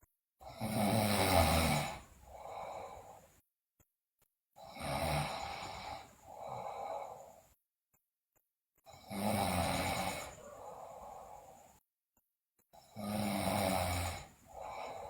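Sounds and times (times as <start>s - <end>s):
person snoring: 0.4s - 3.4s, 4.6s - 7.4s, 8.9s - 11.8s, 12.8s - 15.0s.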